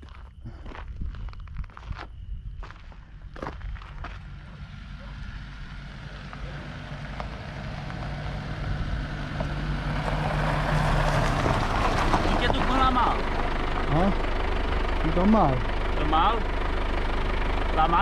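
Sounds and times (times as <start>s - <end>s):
vehicle engine hum: 0.0s - 18.0s.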